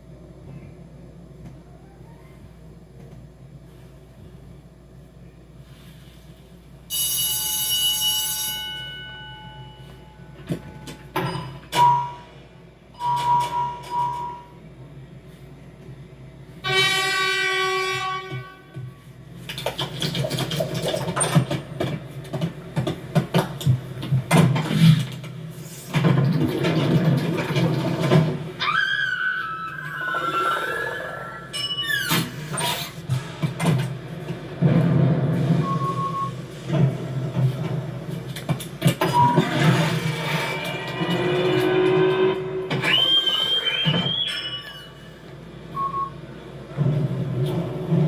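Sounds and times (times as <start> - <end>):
mechanical clatter and knocking: 18.3 - 28.6, 31.6 - 44.6, 46.6 - 48.0.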